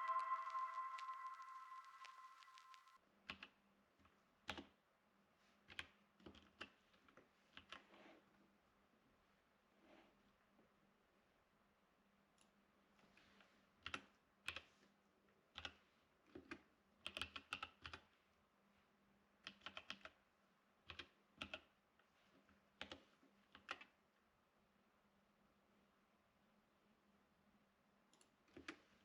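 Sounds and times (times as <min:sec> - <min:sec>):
faint keyboard typing: 0:00.0 - 0:04.8, 0:13.8 - 0:14.7, 0:15.5 - 0:18.1, 0:19.4 - 0:20.2, 0:20.8 - 0:24.0.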